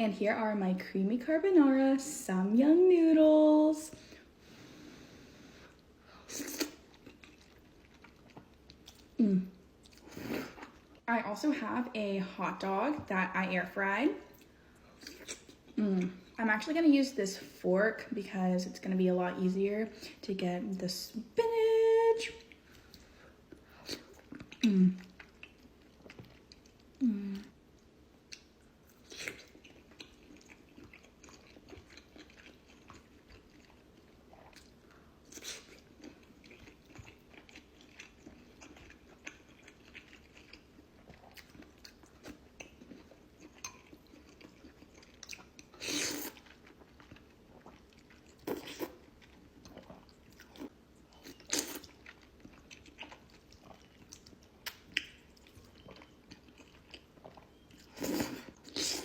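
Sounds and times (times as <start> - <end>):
person chewing and biting: 28.3 - 59.0.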